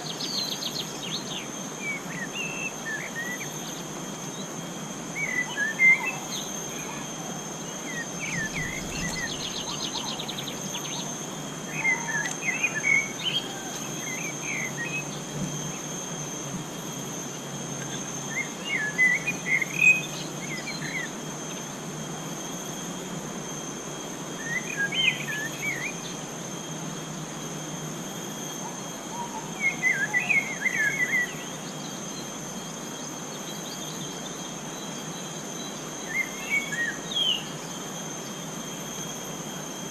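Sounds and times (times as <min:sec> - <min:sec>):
high-pitched insect drone: 0:00.0 - 0:39.9
bird chirping and warbling: 0:07.9 - 0:11.1.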